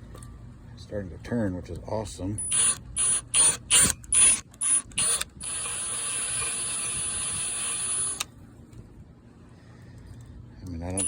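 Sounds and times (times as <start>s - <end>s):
power drill motor whine: 2.4s - 8.3s.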